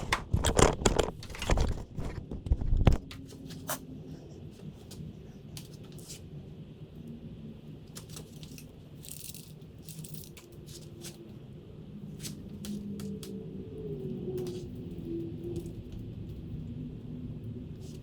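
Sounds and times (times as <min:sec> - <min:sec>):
steady low hum: 0:00.0 - 0:18.0
small hard parts clicking: 0:08.0 - 0:11.2.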